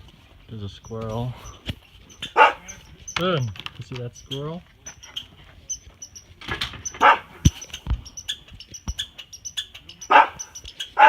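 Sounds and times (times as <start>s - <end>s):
dog barking: 2.2s - 2.9s, 7.0s - 7.5s, 10.0s - 11.0s.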